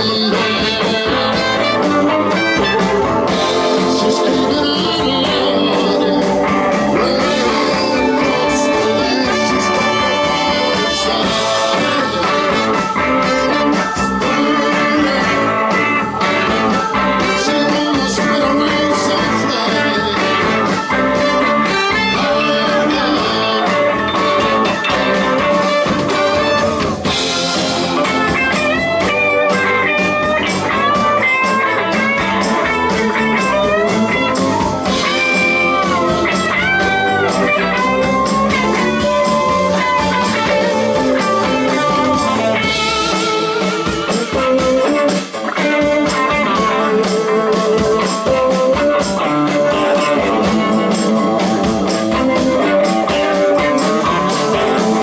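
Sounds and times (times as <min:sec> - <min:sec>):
electric guitar bending notes: 0:00.0 - 0:55.0
live blues band playing: 0:00.0 - 0:55.0.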